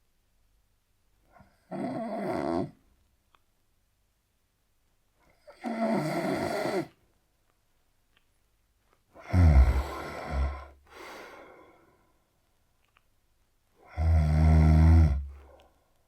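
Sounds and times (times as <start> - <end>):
man snoring heavily: 1.7 - 2.7, 5.5 - 6.9, 9.2 - 11.2, 13.9 - 15.4
soft breath out: 9.7 - 12.3.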